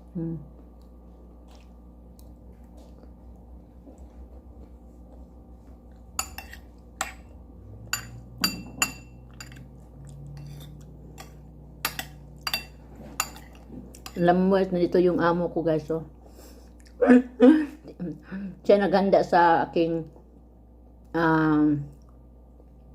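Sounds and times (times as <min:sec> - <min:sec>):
cutlery clinking on a dish: 0:08.0 - 0:09.7, 0:10.4 - 0:14.2.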